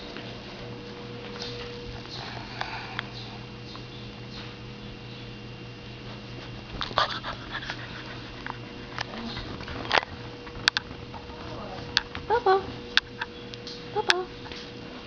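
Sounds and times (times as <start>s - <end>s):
steady low hum: 0.0s - 15.0s
puppy sniffing: 6.3s - 10.3s.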